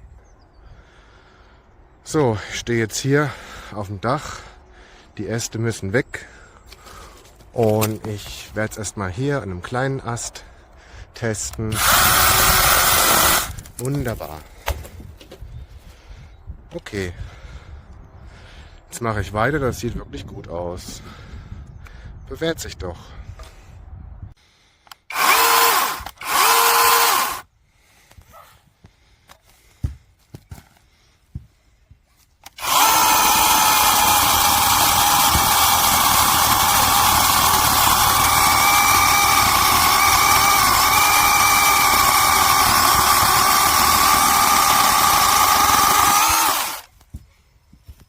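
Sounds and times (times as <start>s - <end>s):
electric chainsaw whining: 11.7s - 13.7s, 25.0s - 27.4s, 32.4s - 46.9s.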